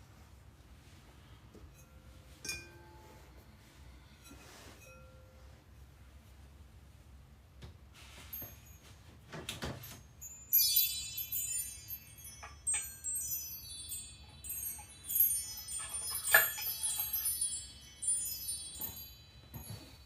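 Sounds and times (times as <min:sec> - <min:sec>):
metal chimes ringing: 0:09.8 - 0:20.0.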